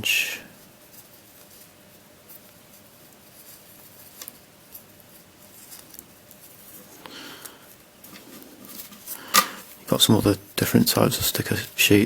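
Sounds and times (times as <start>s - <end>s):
sticker sheets rustling: 0.8s - 7.0s.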